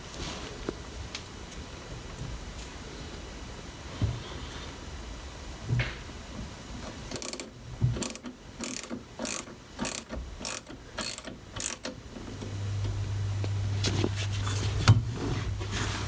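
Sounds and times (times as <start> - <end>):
hand tool rasping strokes: 8.0 - 11.8.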